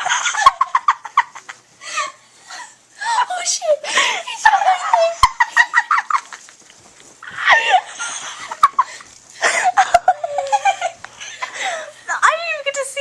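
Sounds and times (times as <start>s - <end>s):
hysterical high-pitched laughter: 0.0s - 2.2s, 3.1s - 6.4s, 7.2s - 11.8s.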